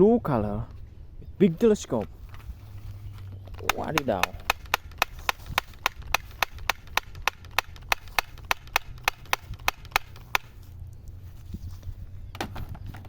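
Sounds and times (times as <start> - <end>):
rapid sharp clicks: 3.5 - 10.6.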